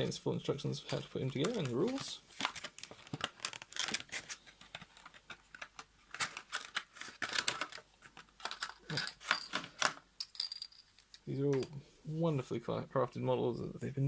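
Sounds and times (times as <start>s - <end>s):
paper and plastic rustling: 0.8s - 10.0s.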